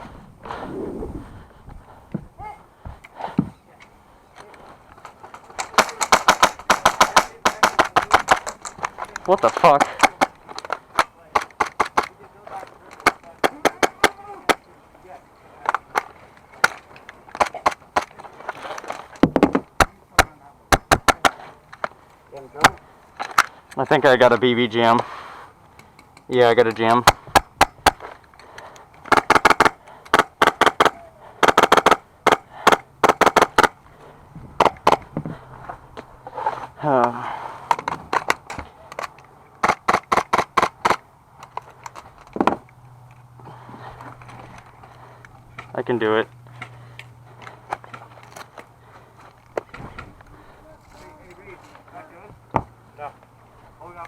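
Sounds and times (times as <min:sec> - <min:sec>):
airsoft gun shots: 0:29.1 - 0:33.7.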